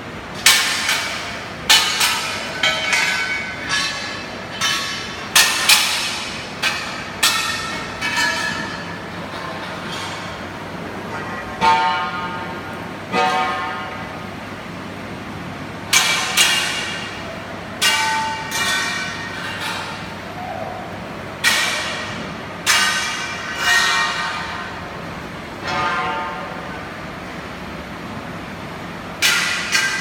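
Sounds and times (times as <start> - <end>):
hammer striking metal: 0.4 - 10.4, 15.9 - 20.4, 21.4 - 25.0, 29.2 - 30.0.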